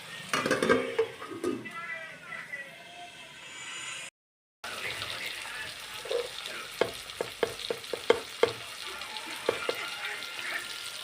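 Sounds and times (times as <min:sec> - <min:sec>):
chicken sizzling in a pan: 0:04.6 - 0:11.0
spoon knocking against pan: 0:06.1 - 0:08.6, 0:09.4 - 0:09.9.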